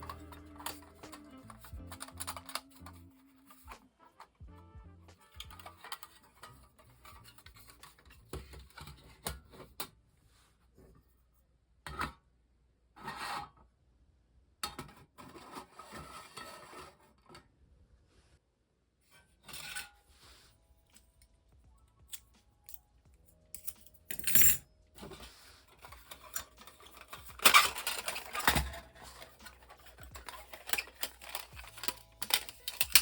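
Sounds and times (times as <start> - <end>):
thin metal parts scraping and clinking: 0.0 - 3.7, 5.3 - 8.1, 23.5 - 33.0.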